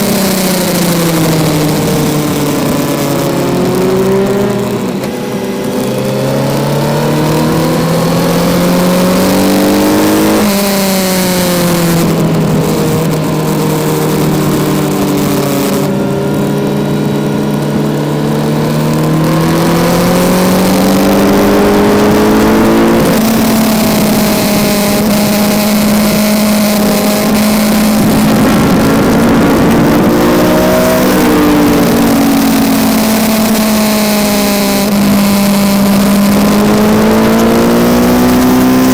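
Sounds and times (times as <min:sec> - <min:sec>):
motorcycle engine at high revs: 0:00.0 - 0:38.9
wind rushing: 0:19.2 - 0:32.9.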